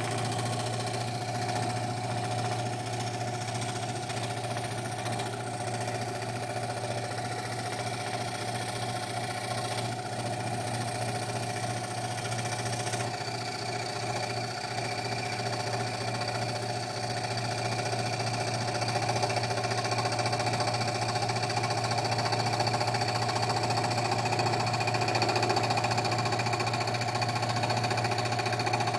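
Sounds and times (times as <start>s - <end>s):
scroll saw buzzing: 0.0s - 13.2s.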